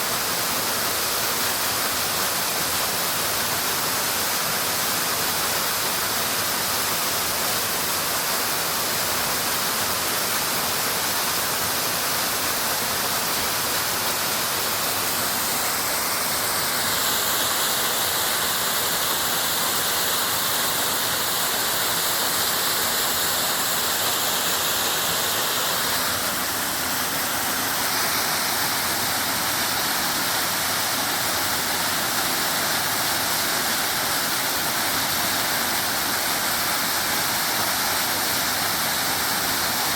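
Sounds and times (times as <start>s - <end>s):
waterfall rushing: 0.0s - 39.9s.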